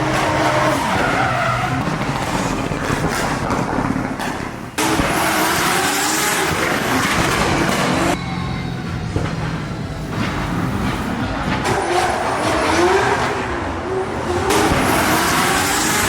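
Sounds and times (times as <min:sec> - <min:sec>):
tyres squealing: 0:00.0 - 0:03.4
car engines revving: 0:00.0 - 0:16.0.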